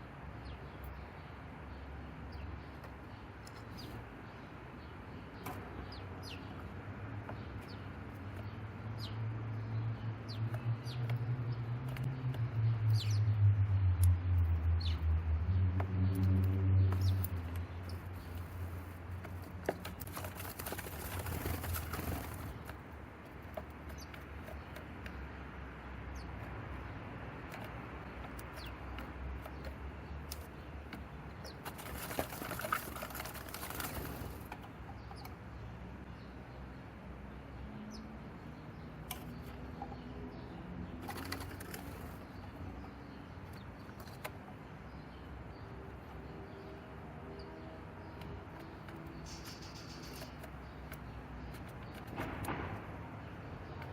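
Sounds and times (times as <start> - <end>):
bird wings fluttering: 18.3 - 22.7, 31.6 - 34.5, 41.0 - 42.2.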